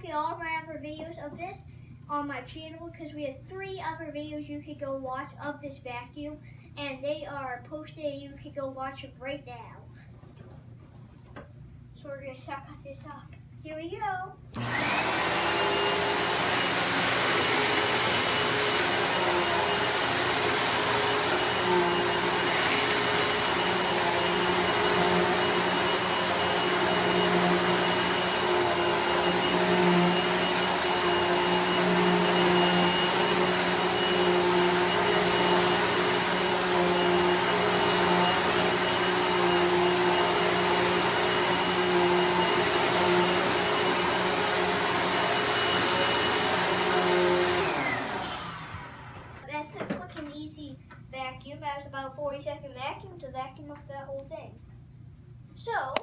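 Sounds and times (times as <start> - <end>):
vacuum cleaner running: 14.5 - 49.6.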